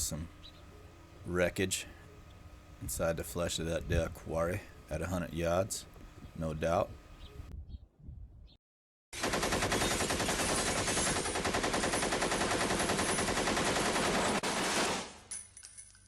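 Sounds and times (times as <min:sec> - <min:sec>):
rapid automatic gunfire: 0:09.2 - 0:15.2.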